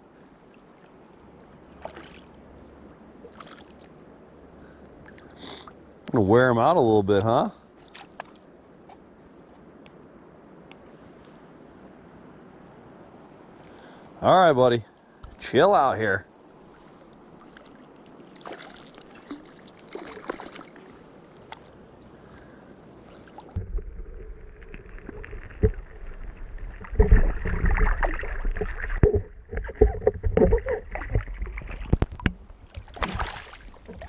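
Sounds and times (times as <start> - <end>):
water splashing and sloshing: 0.0 - 11.5, 15.0 - 34.0.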